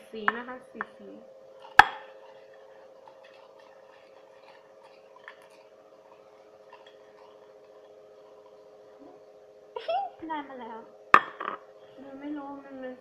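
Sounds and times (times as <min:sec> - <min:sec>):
steady background hum: 0:00.0 - 0:13.0.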